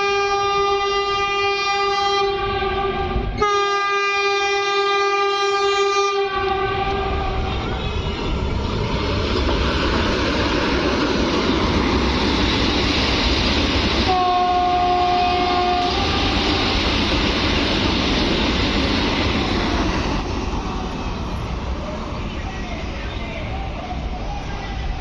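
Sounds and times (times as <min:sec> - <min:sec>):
train horn: 0:00.0 - 0:08.4, 0:14.0 - 0:16.6
train rushing past: 0:00.0 - 0:25.0.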